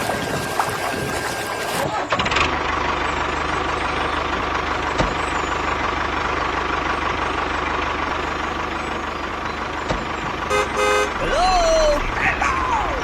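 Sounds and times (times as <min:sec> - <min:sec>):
mechanical running noise: 0:00.0 - 0:02.5.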